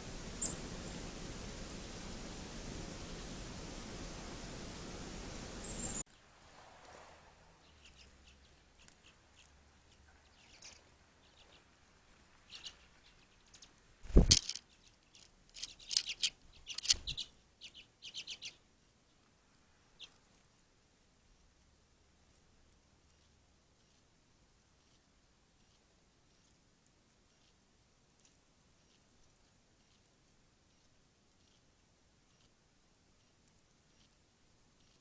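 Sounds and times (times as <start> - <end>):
songbirds chirping: 0.0 - 27.3
steady hiss: 0.0 - 35.0.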